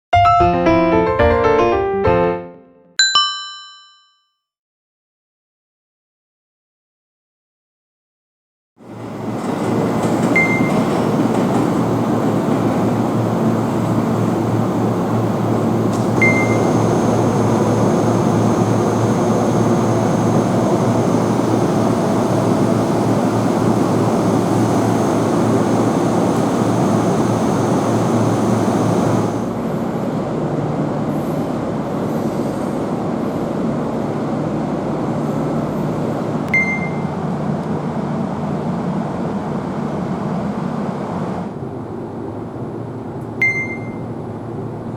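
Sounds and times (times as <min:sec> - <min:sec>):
train rumble with low hum: 0:08.8 - 0:44.9
short high beeps: 0:36.5 - 0:37.1, 0:43.4 - 0:44.0.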